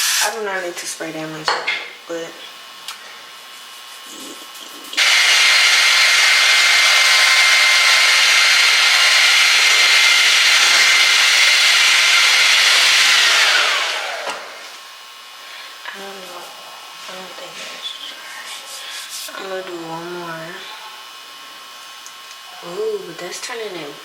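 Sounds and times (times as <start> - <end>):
hair dryer blowing: 4.1 - 14.9
motor winding down: 5.0 - 14.6.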